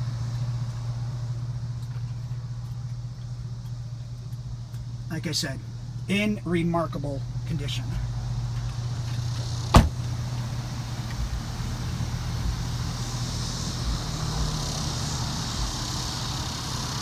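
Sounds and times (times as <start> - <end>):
car engine idling: 0.0 - 17.0
sharp knock: 9.8 - 10.1.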